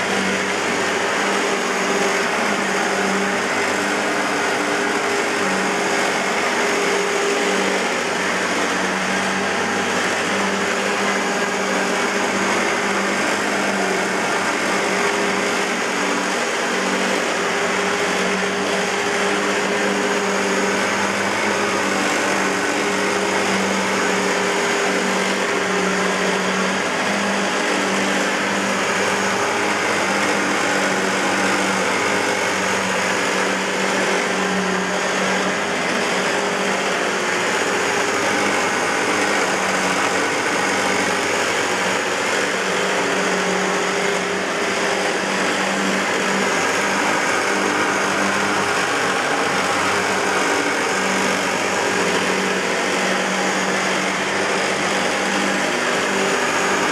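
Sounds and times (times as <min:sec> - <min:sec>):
vacuum cleaner running: 0:00.0 - 0:56.9.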